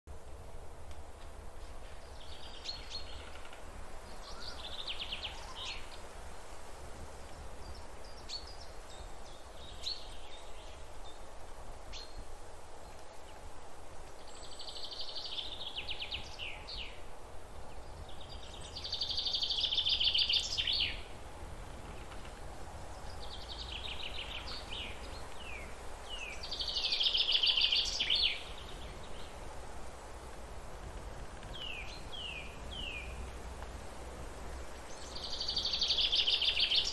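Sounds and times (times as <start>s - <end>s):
songbirds singing trilled phrases: 17.7s - 21.1s, 21.9s - 29.4s, 34.9s - 36.9s.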